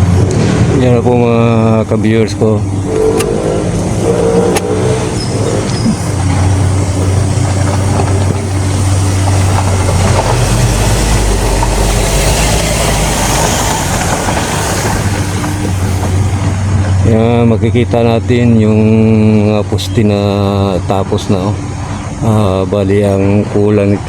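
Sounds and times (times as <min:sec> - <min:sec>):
dense rushing noise: 0:00.0 - 0:19.5
low engine drone: 0:00.0 - 0:24.0.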